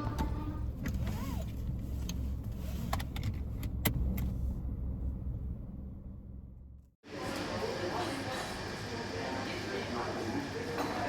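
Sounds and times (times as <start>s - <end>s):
car rumble: 0.0s - 7.0s.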